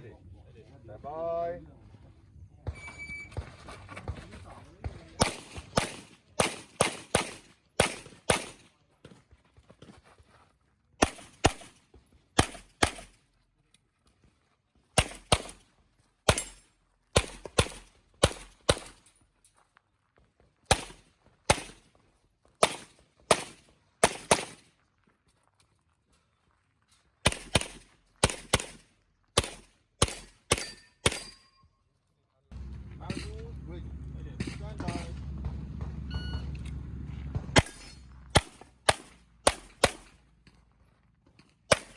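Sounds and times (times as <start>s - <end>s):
handgun shots: 22.6s - 24.6s, 27.3s - 28.8s, 29.4s - 31.4s, 37.6s - 40.2s, 41.7s - 41.9s.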